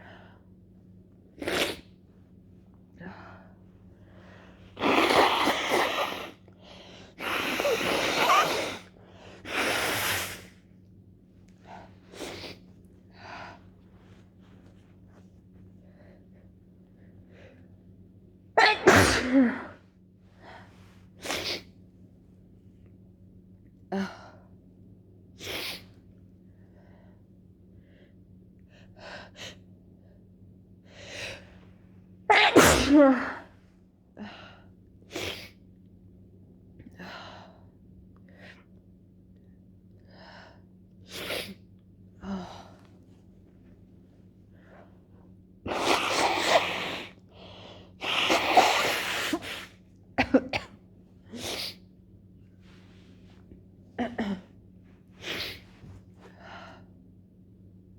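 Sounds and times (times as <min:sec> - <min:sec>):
wet human sneezes: 0:01.4 - 0:01.9, 0:04.8 - 0:06.4, 0:07.2 - 0:10.6, 0:18.6 - 0:19.8, 0:21.2 - 0:21.7, 0:32.3 - 0:33.5, 0:45.7 - 0:47.2, 0:48.0 - 0:51.8, 0:55.2 - 0:55.9.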